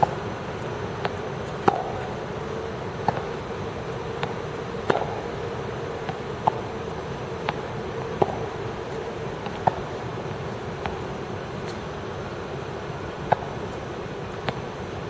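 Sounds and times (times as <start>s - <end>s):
tennis balls hit by rackets: 0.0s - 12.0s, 13.0s - 14.8s
steady buzzing hum: 0.0s - 15.0s
balls bouncing on court: 1.0s - 2.3s, 2.9s - 11.9s, 13.2s - 13.8s, 14.4s - 14.7s.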